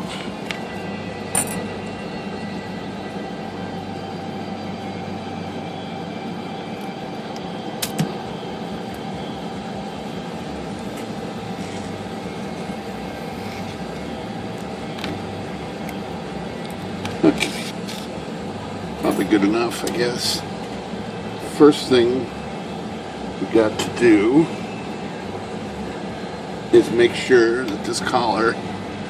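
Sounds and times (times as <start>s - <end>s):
sharp click: 7.8s - 8.1s.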